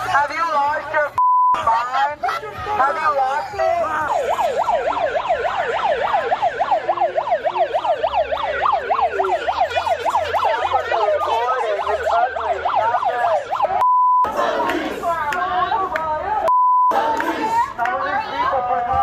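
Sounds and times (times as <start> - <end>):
one-tone bleep: 1.2 - 1.6, 13.8 - 14.3, 16.5 - 17.0
electronic siren yelping: 3.2 - 14.3.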